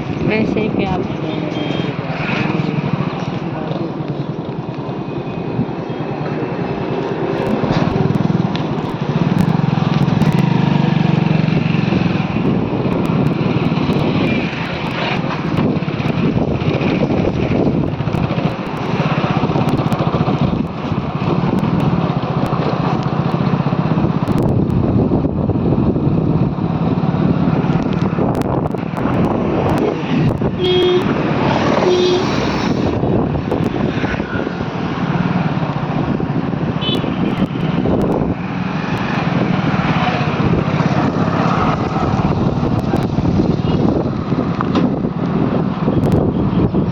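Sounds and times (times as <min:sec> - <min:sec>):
motor vehicle running: 0:00.0 - 0:46.9.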